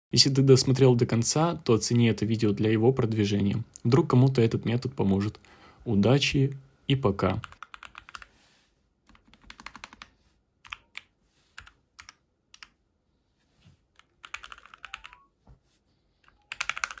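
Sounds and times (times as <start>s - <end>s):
mechanical keyboard typing: 7.4s - 8.3s, 9.1s - 12.8s, 14.0s - 15.2s, 16.3s - 17.0s.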